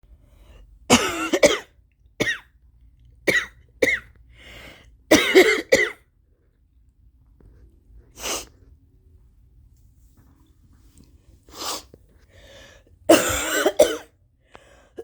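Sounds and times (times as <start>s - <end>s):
woman coughing harshly: 0.9s - 2.5s, 3.3s - 4.1s, 5.1s - 6.0s, 13.1s - 14.2s.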